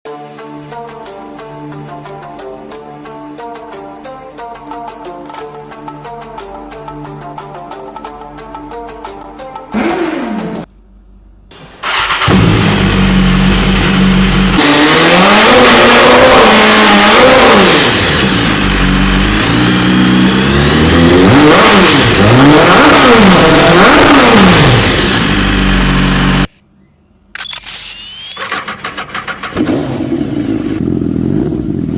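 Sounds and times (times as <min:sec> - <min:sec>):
motorcycle engine idling and revving: 0:09.7 - 0:10.7, 0:11.8 - 0:26.5, 0:28.5 - 0:31.9.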